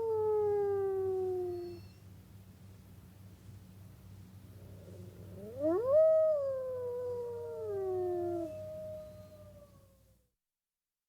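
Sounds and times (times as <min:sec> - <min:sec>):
wolves howling: 0:04.6 - 0:09.9.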